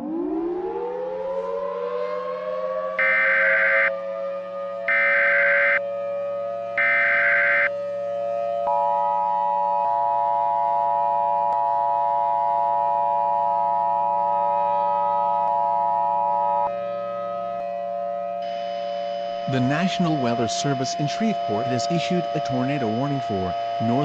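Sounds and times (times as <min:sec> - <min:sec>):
buzzy data bursts: 0:06.8 - 0:07.7
two-tone attention signal: 0:06.8 - 0:07.7, 0:18.4 - 0:24.0.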